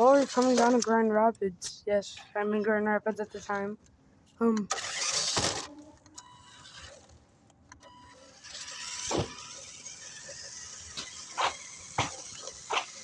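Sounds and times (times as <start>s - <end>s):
electric motor and gears whirring: 4.6s - 13.0s.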